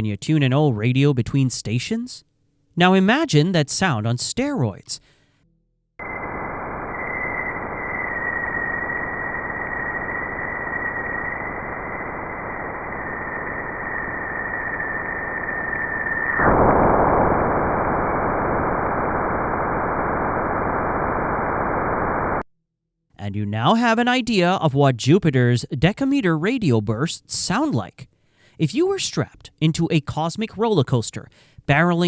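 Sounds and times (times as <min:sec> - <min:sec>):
faint whistling tone: 0:06.0 - 0:16.4
radio static hiss: 0:06.0 - 0:22.5.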